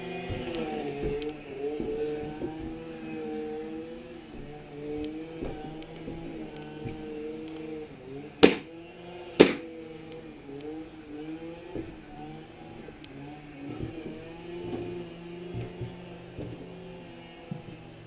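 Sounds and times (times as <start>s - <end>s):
low wavering drone: 0.0s - 18.0s
airsoft gun shots: 8.4s - 8.8s, 9.4s - 9.8s.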